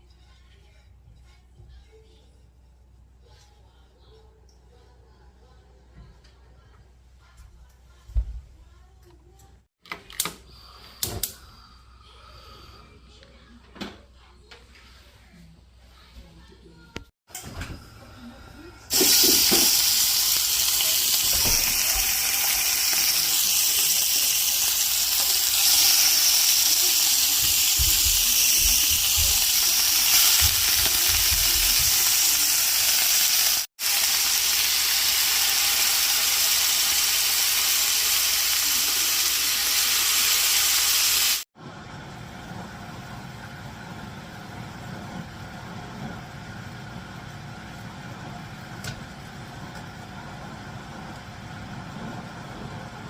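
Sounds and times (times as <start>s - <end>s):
meat sizzling in a pan: 18.9s - 41.5s.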